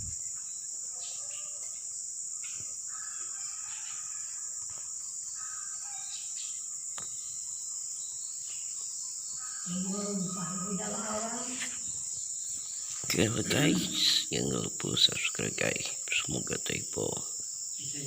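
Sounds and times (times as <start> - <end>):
high-pitched insect chorus: 0.0 - 18.0
faint lower calls: 12.8 - 17.2.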